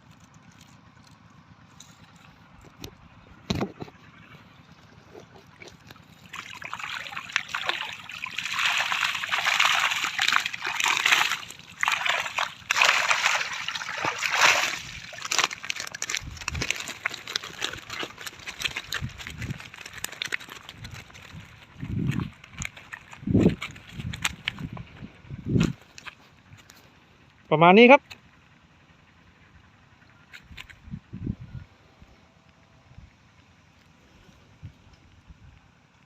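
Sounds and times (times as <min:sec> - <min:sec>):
water sloshing and splashing: 0:00.1 - 0:26.9.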